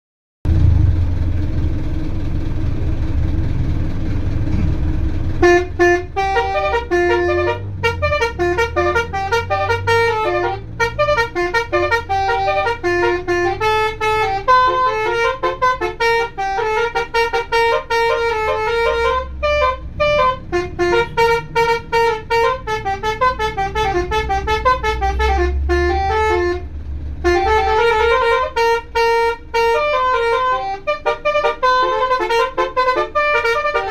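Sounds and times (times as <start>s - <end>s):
low rumble: 0.4s - 9.7s
musical air horn tune: 5.4s - 33.9s.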